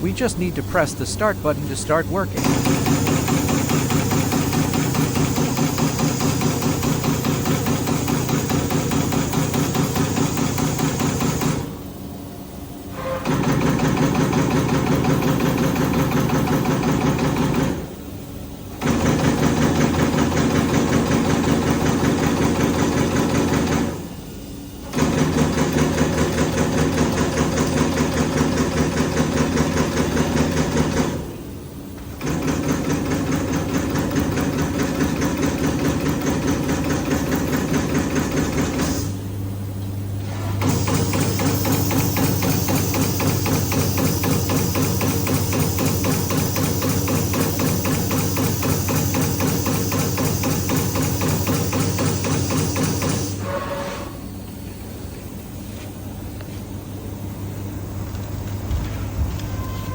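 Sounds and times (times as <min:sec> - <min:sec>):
machine mechanical strokes: 0:02.4 - 0:11.7, 0:40.3 - 0:54.2.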